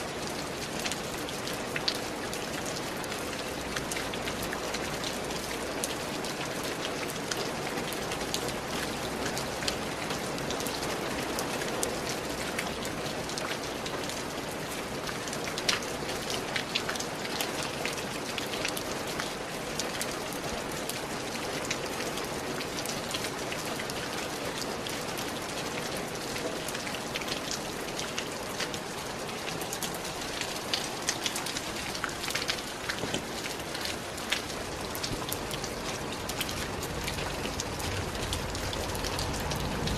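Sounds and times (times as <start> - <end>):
rain hiss: 24.7 - 39.9
raindrops ticking: 25.3 - 39.9.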